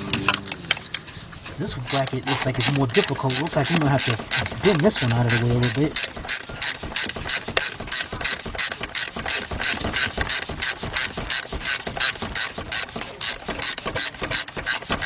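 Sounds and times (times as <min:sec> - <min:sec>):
ratchet clicking: 0:00.0 - 0:15.0.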